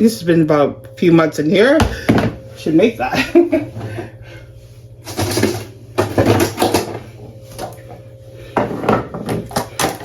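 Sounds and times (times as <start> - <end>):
frozen items and bins clattering: 5.0 - 7.9, 8.6 - 10.0.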